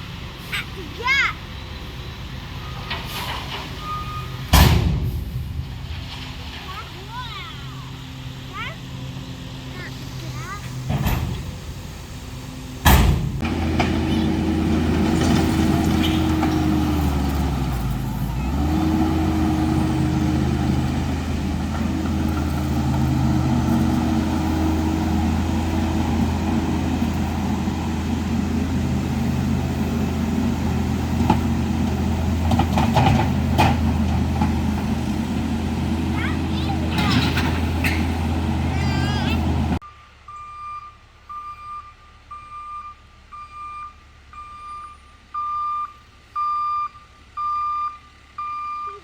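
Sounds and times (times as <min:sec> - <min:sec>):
heavy equipment engine running: 0:00.0 - 0:39.8
sharp bang: 0:04.5 - 0:06.0.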